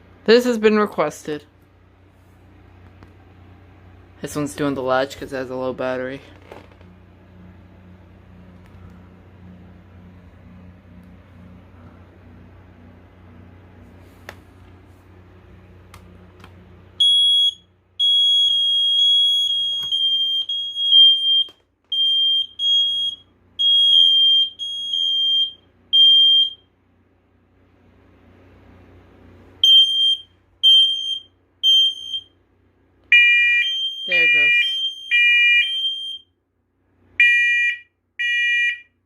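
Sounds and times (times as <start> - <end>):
smoke alarm beeping: 17.0 - 26.6, 29.6 - 32.3, 33.1 - 36.3, 37.2 - 39.0.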